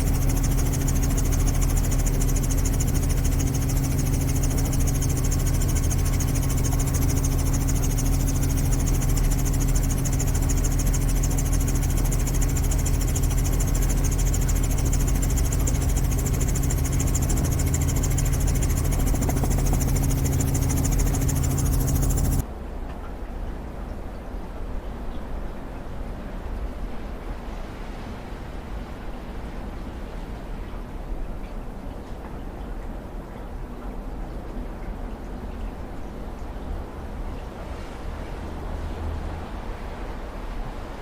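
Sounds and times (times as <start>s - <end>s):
engine humming: 0.0s - 22.4s.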